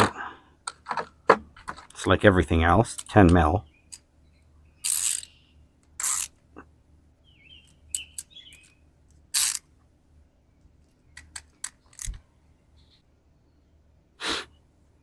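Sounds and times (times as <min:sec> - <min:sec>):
short hissing bursts: 0:14.2 - 0:14.5.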